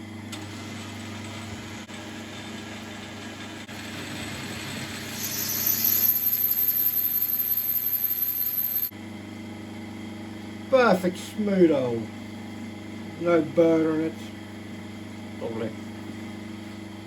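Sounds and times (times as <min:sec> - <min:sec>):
cutting hiss and high whine: 0:04.9 - 0:08.9.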